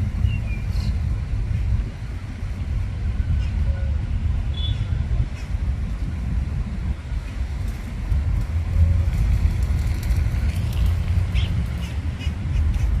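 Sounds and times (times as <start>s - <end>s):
low outdoor rumble: 0.0s - 13.0s.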